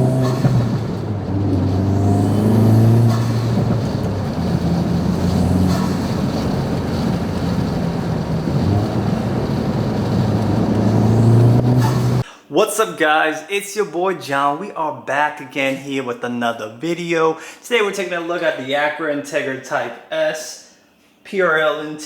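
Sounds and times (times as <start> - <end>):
car engine revving: 0.0 - 12.2.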